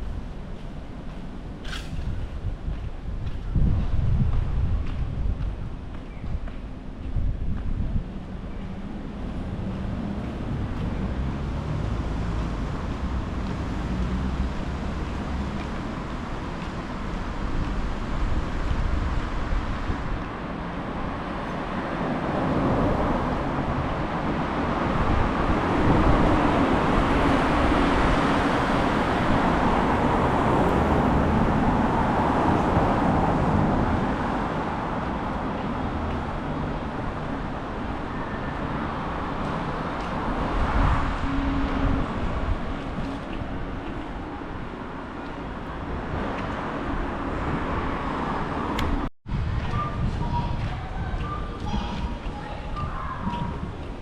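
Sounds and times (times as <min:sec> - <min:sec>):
wind rumbling on microphone: 0:00.0 - 0:54.0
vehicle passing: 0:08.9 - 0:49.1.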